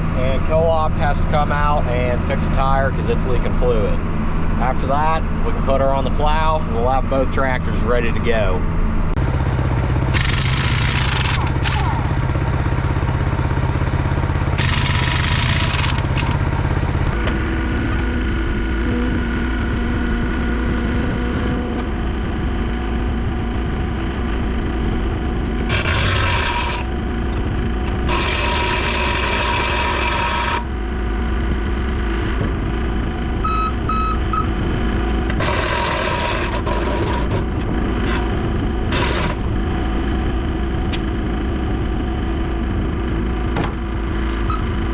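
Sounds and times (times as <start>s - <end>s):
tractor diesel engine running: 9.1s - 44.9s.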